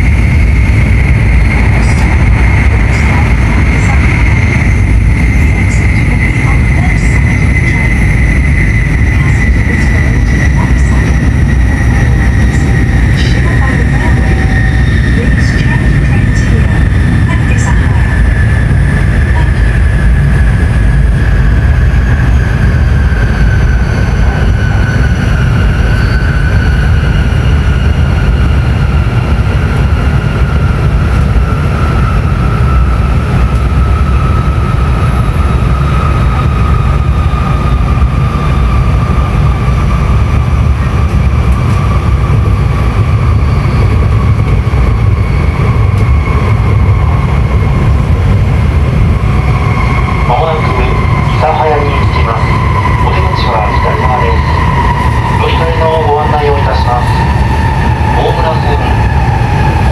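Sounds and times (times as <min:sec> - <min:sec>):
train rumble: 0:00.0 - 0:59.9.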